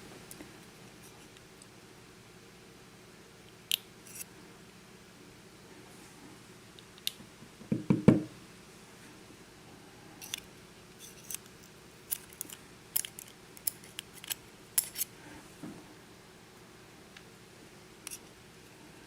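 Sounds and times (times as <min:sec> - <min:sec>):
knocks: 0:07.6 - 0:08.3.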